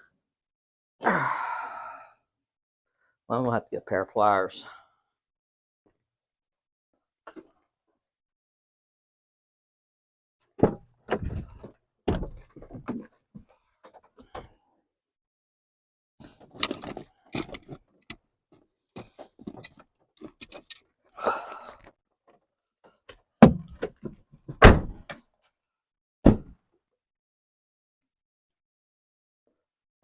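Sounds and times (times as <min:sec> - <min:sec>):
metal tools clinking and rattling: 0:16.6 - 0:17.8, 0:19.5 - 0:20.8.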